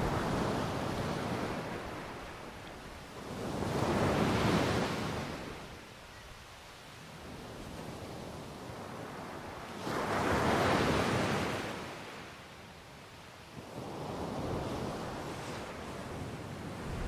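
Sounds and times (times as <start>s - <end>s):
wind on microphone: 0.0s - 2.5s, 13.7s - 17.0s
ocean waves crashing: 0.0s - 5.6s, 13.9s - 17.0s.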